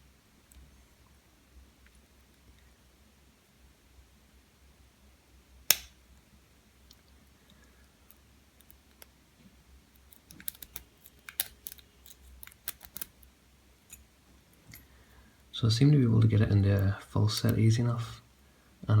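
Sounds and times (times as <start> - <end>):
lock pick clicking in padlock: 5.7 - 5.9, 10.1 - 13.2.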